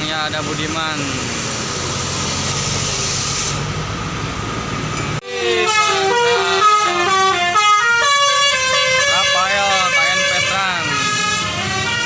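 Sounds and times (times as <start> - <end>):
bus engine running: 0.0 - 12.0
multi-tone bus horn tune: 5.2 - 12.0.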